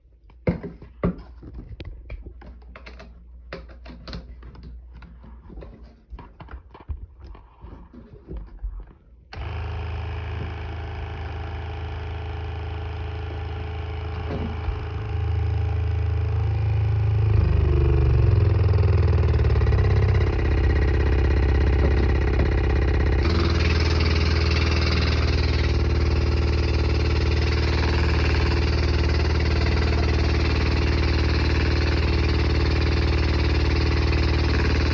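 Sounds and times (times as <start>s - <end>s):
pump motor buzzing hum: 9.3s - 34.9s.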